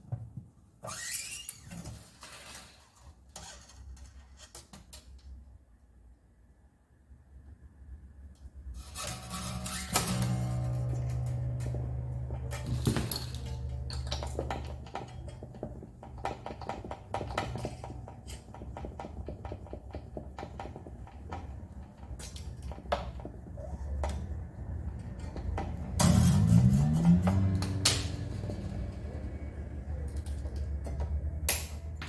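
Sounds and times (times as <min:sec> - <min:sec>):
acoustic guitar strum ringing: 0:09.0 - 0:14.0.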